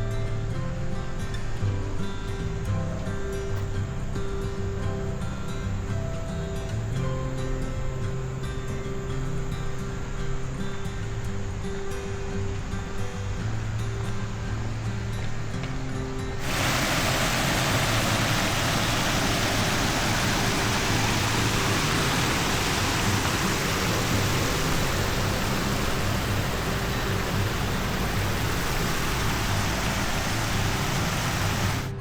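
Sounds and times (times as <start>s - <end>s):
faint background music: 0.0s - 32.0s
steady rushing noise: 16.4s - 32.0s.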